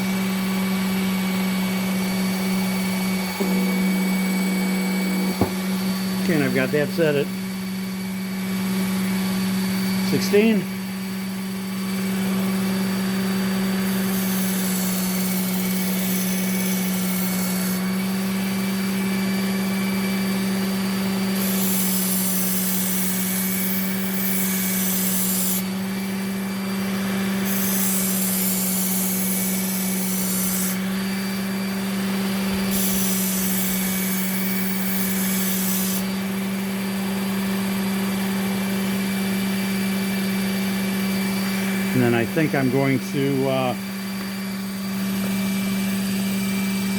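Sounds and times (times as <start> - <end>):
belt sharpener motor hum: 0.0 - 46.9
knife hissing on sharpening belt: 27.4 - 30.8.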